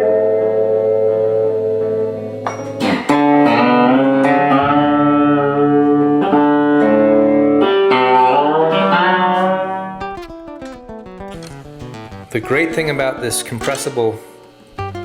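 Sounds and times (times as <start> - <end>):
electric guitar chords and notes: 0.0 - 15.0.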